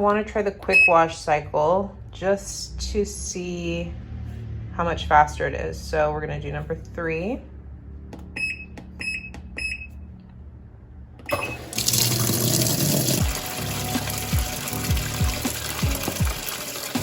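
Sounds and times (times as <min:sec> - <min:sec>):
washing machine beeps: 0:00.7 - 0:01.0, 0:08.3 - 0:10.1, 0:11.3 - 0:12.6
water rushing into tub: 0:11.4 - 0:17.0
background music with beat: 0:13.2 - 0:17.0.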